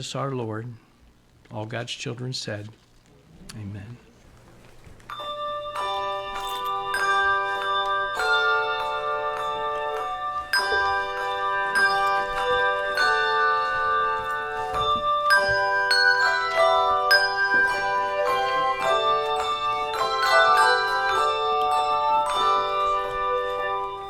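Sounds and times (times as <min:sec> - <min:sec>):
handbell choir ringing chords: 0:05.1 - 0:24.0.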